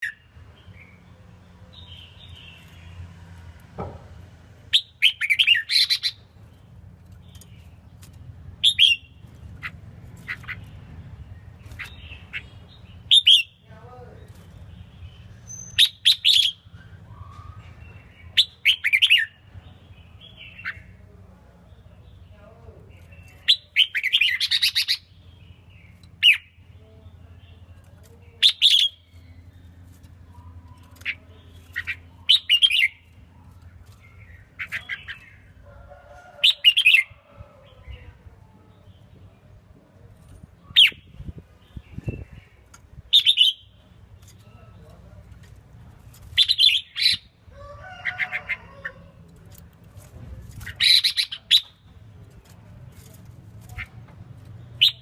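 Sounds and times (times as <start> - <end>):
bird singing bright phrases: 0.0 - 3.3, 4.6 - 35.6, 40.5 - 45.0, 50.5 - 55.0.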